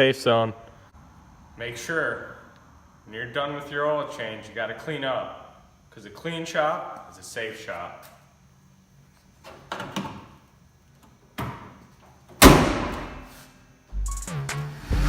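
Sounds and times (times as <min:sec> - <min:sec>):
loud ringing slam: 0:12.4 - 0:13.3.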